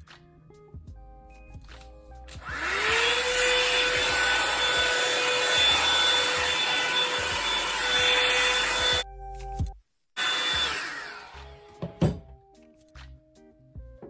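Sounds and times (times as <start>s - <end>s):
hair dryer brush running: 2.4s - 9.0s, 10.2s - 12.2s.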